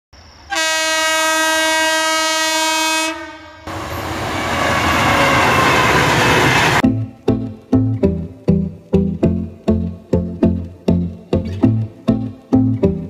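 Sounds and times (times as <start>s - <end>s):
train running: 0.3s - 6.8s
train horn: 0.5s - 4.0s.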